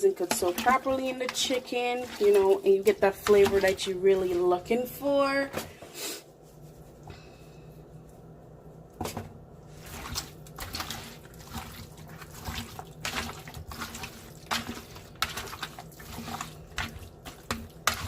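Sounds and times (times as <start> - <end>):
hands squishing raw chicken: 9.7 - 18.0.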